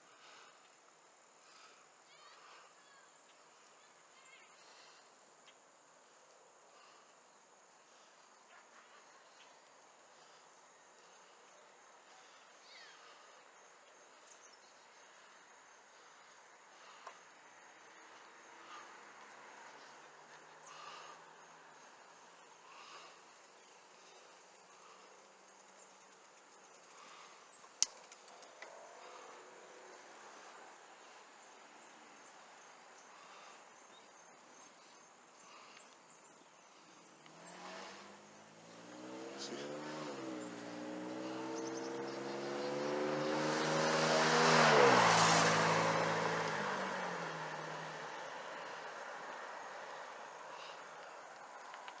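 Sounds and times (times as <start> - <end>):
vehicle engine passing by: 13.0 - 13.4, 18.1 - 21.9, 22.7 - 23.2, 24.8 - 25.1, 27.0 - 31.9, 33.2 - 33.5, 36.7 - 51.1.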